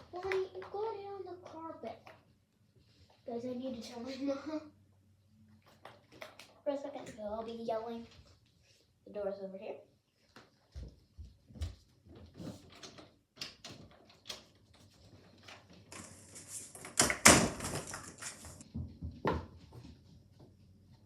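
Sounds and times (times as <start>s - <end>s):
door banging: 16.8s - 18.6s
door knocks and rattles: 16.9s - 19.5s.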